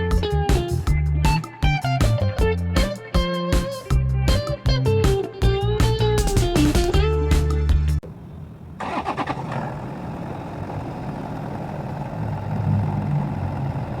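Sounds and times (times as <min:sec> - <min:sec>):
guitar music: 0:00.0 - 0:08.0
car engine starting and idling: 0:08.0 - 0:14.0.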